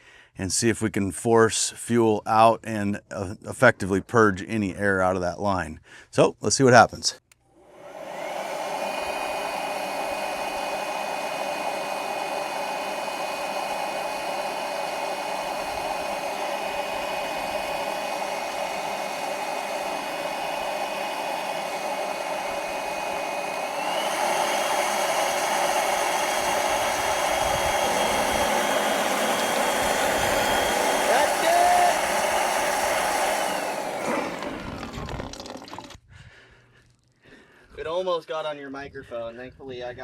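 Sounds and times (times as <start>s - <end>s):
blower motor whine: 7.5s - 36.0s.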